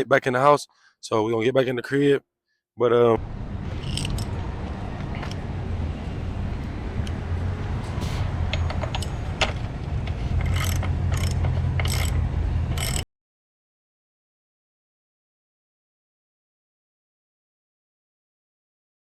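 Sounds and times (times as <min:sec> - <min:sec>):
sharp clicks and knocks: 0:03.7 - 0:05.5, 0:06.6 - 0:13.0.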